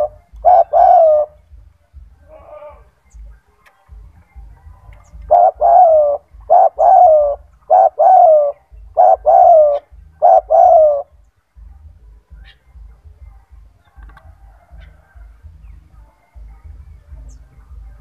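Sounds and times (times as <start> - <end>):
dove cooing: 0.0 - 18.0.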